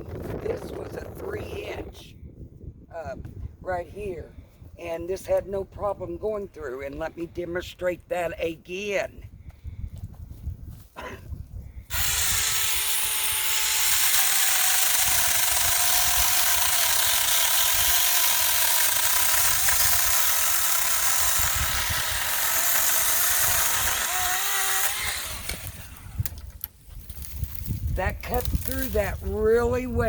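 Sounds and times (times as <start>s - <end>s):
electric chainsaw cutting branch: 11.9s - 27.5s, 28.3s - 29.1s.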